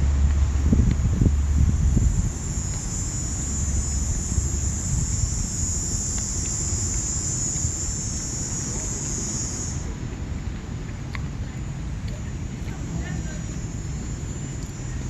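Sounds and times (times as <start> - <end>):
wind buffeting microphone: 0.0 - 15.0
high-pitched insect drone: 1.3 - 9.9, 12.5 - 15.0.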